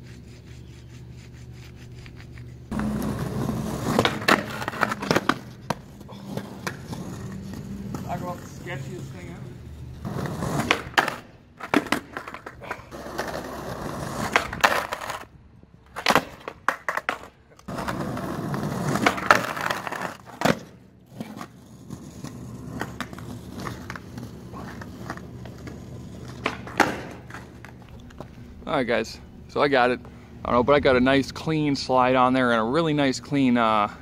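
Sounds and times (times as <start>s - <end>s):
skateboard wheels rolling on concrete: 0.0s - 34.0s
skateboard tail clacks: 2.2s - 8.4s, 10.1s - 15.3s, 15.9s - 28.3s
skateboard trucks grinding ledge: 2.3s - 9.2s, 9.9s - 15.3s, 15.9s - 28.3s.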